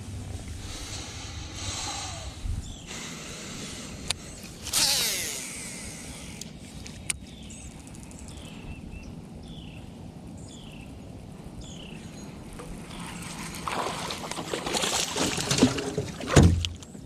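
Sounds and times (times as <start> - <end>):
low outdoor rumble: 0.0 - 17.0
water splashing and rustling: 12.3 - 17.0.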